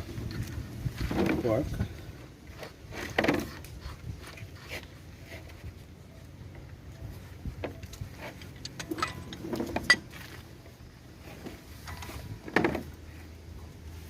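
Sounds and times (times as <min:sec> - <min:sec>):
metallic clicks and knocks: 0:08.5 - 0:10.2.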